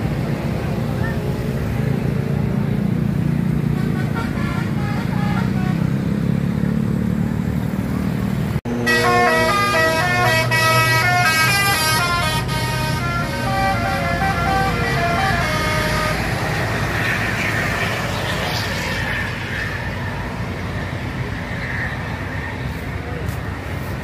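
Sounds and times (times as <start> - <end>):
bus engine running: 0.0 - 24.0
musical bus horn tune: 3.7 - 6.1, 8.7 - 17.8.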